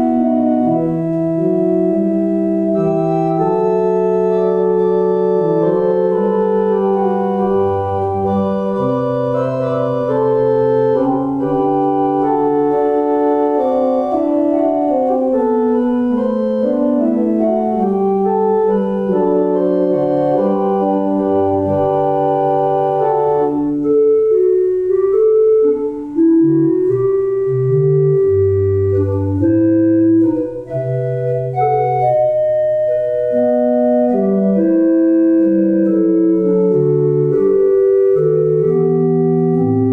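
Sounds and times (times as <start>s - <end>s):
organ playing chords: 0.0s - 39.9s.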